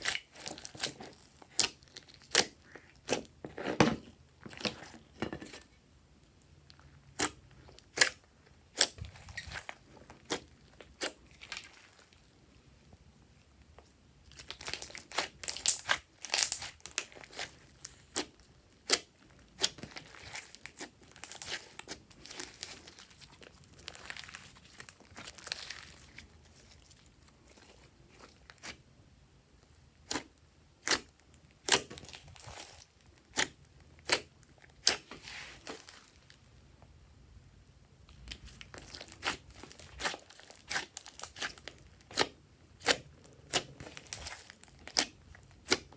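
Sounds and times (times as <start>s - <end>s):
slime popping and crackling: 14.3s - 26.2s, 38.2s - 45.9s.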